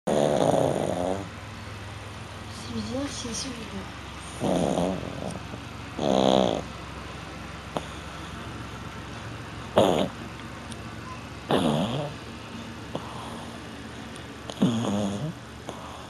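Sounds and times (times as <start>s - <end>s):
dog snoring: 0.1s - 1.4s, 4.2s - 6.7s, 7.7s - 8.4s, 9.7s - 10.2s, 11.5s - 12.2s, 12.9s - 13.6s, 14.4s - 16.0s.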